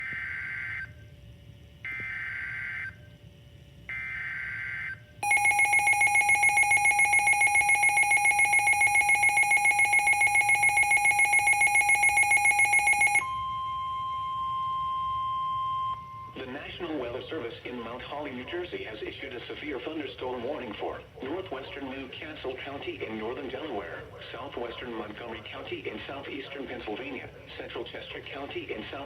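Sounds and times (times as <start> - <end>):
steady warning tone: 0.0 - 20.0
rapidly pulsing alarm tone: 3.9 - 17.2.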